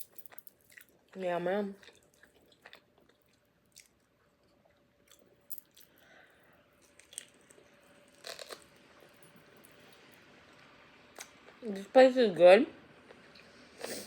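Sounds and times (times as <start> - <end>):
person chewing: 1.8 - 6.0, 6.8 - 8.7.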